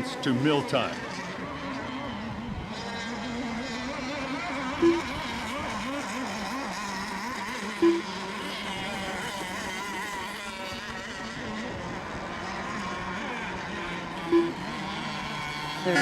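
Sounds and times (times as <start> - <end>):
model boat engines revving: 0.0 - 16.0
loud horn beep: 4.8 - 5.1, 7.8 - 8.2, 14.3 - 14.7.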